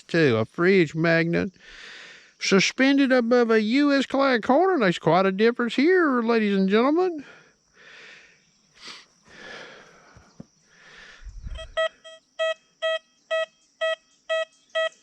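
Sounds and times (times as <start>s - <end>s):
metal detector beeps: 11.5s - 15.0s.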